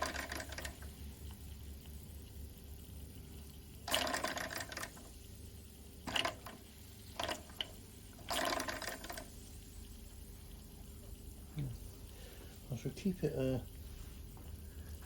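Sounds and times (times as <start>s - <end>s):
toy steam engine spitting steam: 0.0s - 0.9s, 3.8s - 5.1s, 6.0s - 9.3s.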